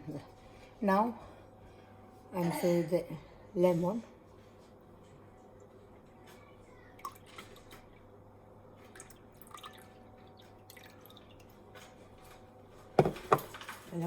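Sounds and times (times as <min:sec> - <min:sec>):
juice dripping into tea: 0:08.8 - 0:11.9.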